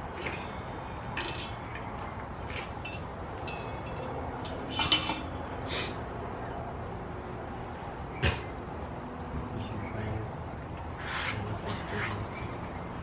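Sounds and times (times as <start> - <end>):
metal tools clinking: 0.0 - 5.7.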